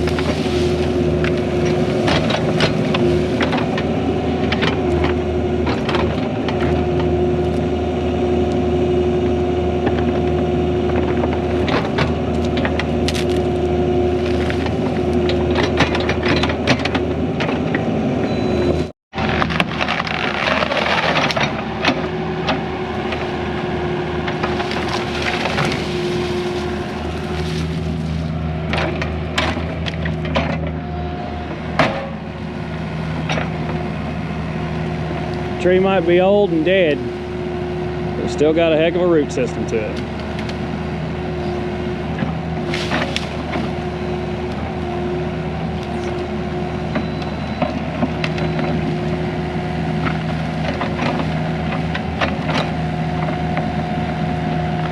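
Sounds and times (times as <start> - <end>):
wood and roots cracking: 0.0 - 6.8, 11.0 - 16.6, 19.2 - 22.0, 24.2 - 30.3, 42.6 - 44.6
diesel engine under load: 0.0 - 54.9.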